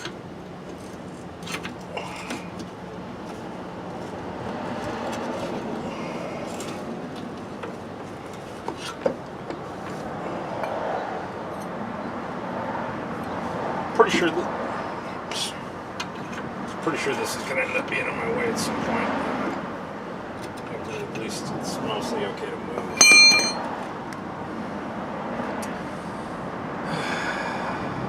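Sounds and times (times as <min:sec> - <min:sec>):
metallic tool clinks: 0:23.0 - 0:23.7.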